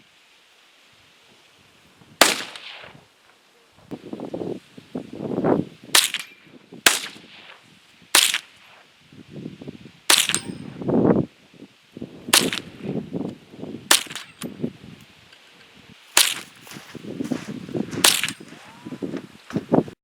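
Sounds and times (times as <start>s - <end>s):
rifle shots cracking: 2.2s - 3.0s, 6.0s - 7.6s, 8.2s - 8.7s, 10.1s - 10.7s, 12.3s - 12.7s, 13.9s - 14.4s, 16.2s - 16.8s, 18.0s - 18.4s.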